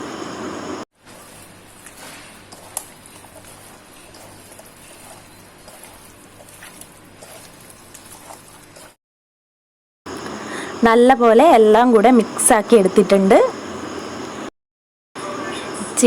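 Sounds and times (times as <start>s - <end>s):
hands squelching raw chicken: 1.1s - 9.0s.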